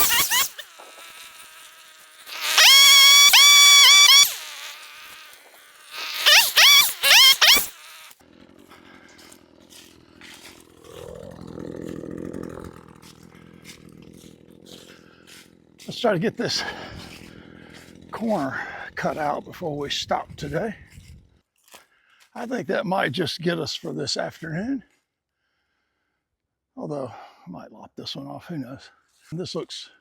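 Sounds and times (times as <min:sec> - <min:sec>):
two-stroke engine revving: 0:00.0 - 0:21.3.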